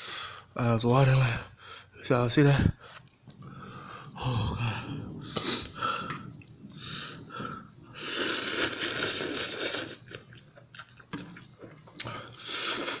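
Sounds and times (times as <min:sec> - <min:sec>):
person breathing hard and wheezing: 0:03.4 - 0:08.3
chewing: 0:08.2 - 0:13.0.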